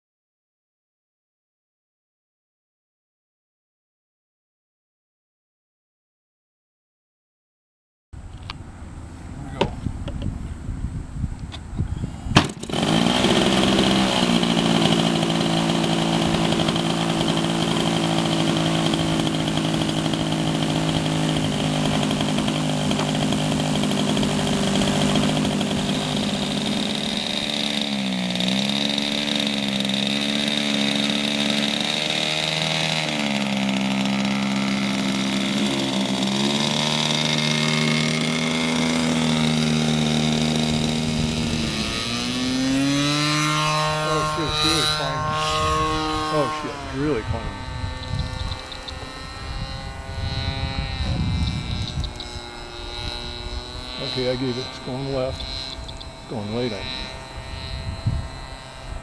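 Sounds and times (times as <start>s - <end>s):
airplane engine in flight: 11.5s - 32.2s, 33.2s - 59.0s.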